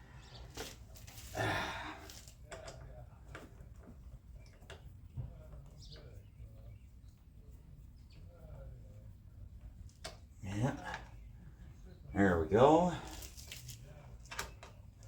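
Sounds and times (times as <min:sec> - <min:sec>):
rustling noise: 0:00.3 - 0:01.4, 0:13.0 - 0:14.6.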